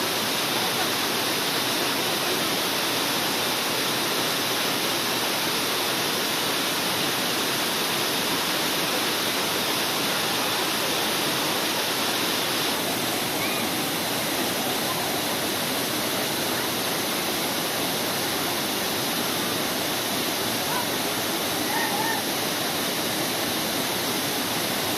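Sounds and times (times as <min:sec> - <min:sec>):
waterfall roaring: 0:00.0 - 0:24.9.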